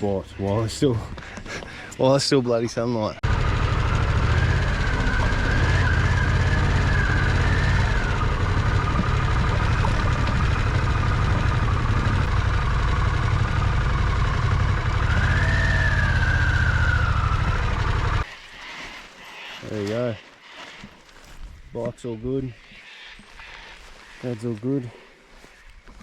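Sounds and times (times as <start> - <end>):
motorcycle engine running: 3.2 - 18.3.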